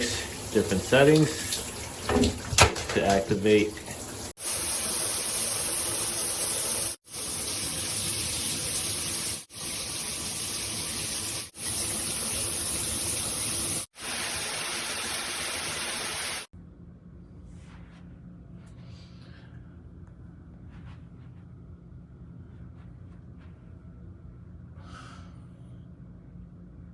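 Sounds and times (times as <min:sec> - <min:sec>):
shower head spraying water: 0:00.0 - 0:16.5.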